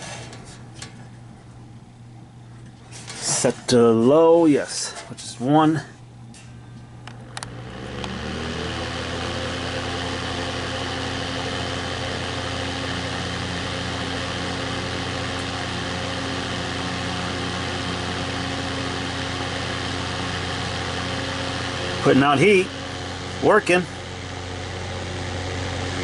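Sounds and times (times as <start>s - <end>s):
heater fan motor humming: 0.0s - 26.0s
heater switch click: 6.3s - 8.3s.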